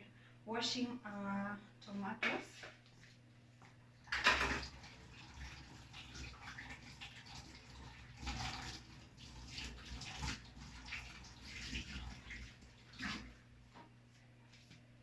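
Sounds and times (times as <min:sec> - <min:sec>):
water splashing and sloshing: 0:04.0 - 0:13.9.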